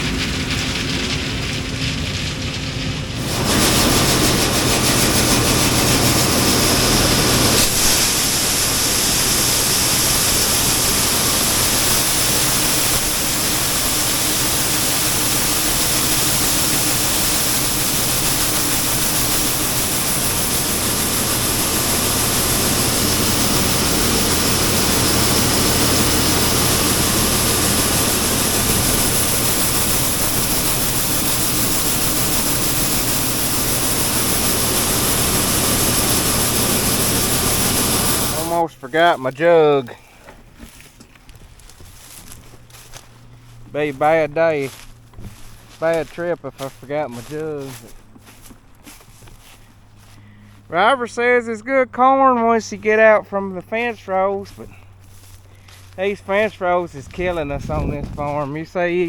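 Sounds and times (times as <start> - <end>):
steady hum: 0.0 - 59.0
truck engine running: 0.0 - 59.0
road and wind noise: 40.4 - 50.7, 54.5 - 59.0.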